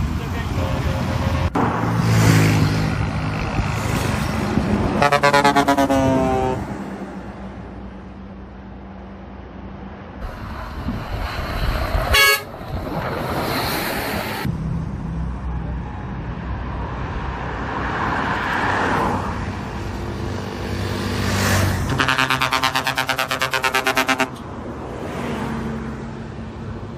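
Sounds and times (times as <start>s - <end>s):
street traffic: 0.0s - 26.9s
bus horn blast: 4.9s - 6.7s, 12.1s - 12.5s, 21.9s - 24.4s.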